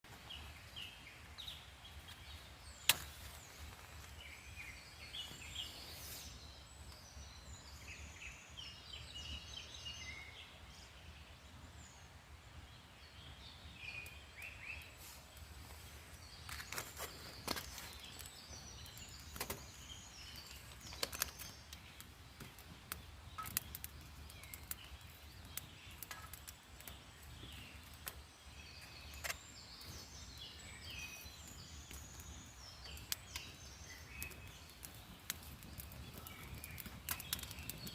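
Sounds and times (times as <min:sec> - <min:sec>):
small birds chirping: 0:00.0 - 0:37.9
sharp snaps and clicks: 0:16.4 - 0:28.2, 0:29.1 - 0:29.9, 0:31.4 - 0:37.9.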